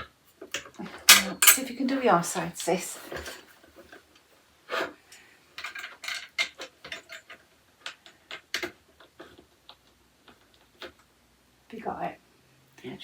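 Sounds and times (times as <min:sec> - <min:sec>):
metal parts clinking and clicking: 0:01.0 - 0:03.4, 0:05.6 - 0:07.4.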